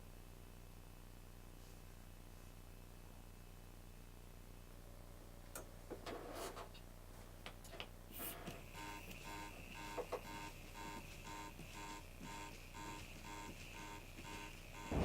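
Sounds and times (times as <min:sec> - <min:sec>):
alarm short beeps: 0:08.7 - 0:15.0.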